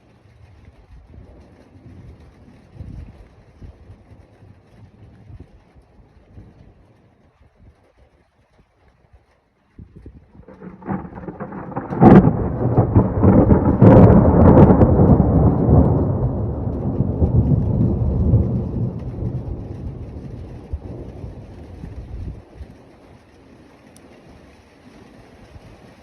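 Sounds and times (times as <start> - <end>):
rain: 0.0 - 26.0
thunder rumbling and cracking: 10.0 - 24.1.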